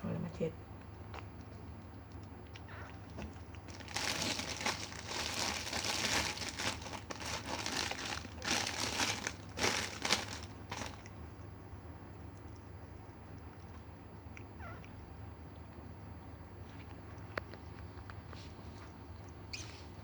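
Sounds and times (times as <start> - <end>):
crinkly material rustling: 3.5 - 11.1.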